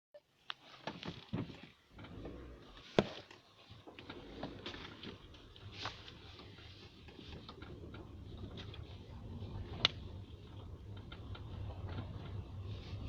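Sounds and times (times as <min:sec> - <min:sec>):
sharp knocks from car front end: 0:03.0 - 0:03.2.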